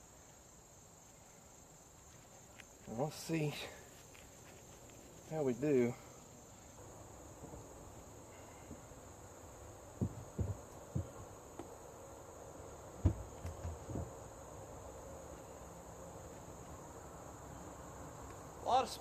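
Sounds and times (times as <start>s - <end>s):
insects chirring: 0.0s - 19.0s
dull knocks and bumps: 10.0s - 11.7s, 13.0s - 14.2s.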